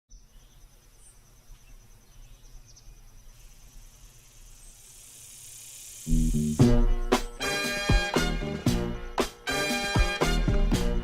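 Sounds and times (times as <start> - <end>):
insects chirping: 0.1 - 7.6
hiss: 3.4 - 6.9.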